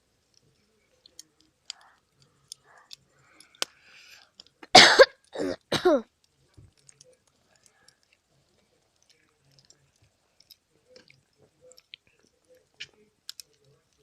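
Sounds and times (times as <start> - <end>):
faint clicks and crackles: 0.0 - 14.0
person coughing: 4.6 - 6.0.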